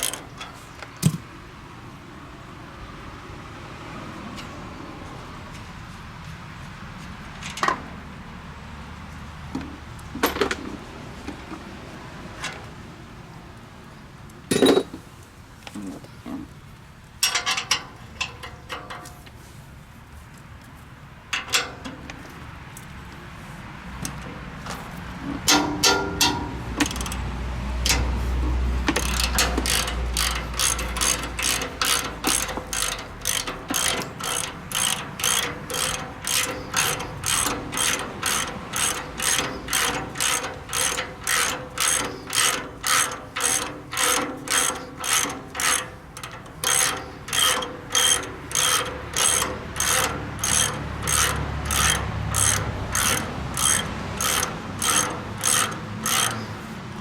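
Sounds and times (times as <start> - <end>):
ratchet wrench clicking: 0.0 - 0.2, 25.5 - 27.2, 27.8 - 56.7.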